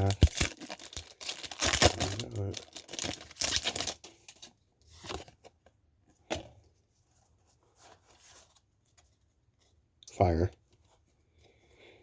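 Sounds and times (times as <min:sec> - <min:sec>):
foil wrapper tearing and crinkling: 0:00.0 - 0:04.1.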